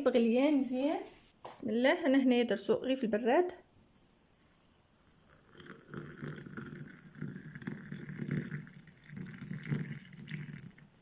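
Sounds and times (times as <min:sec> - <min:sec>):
water pouring into a glass: 0:04.3 - 0:11.0.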